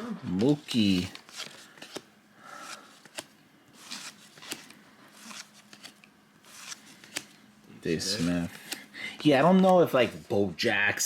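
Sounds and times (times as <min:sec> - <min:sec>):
cardboard cards clicking: 0:00.3 - 0:07.4, 0:08.2 - 0:08.9
cards sliding swishes: 0:00.4 - 0:07.4, 0:08.0 - 0:10.2.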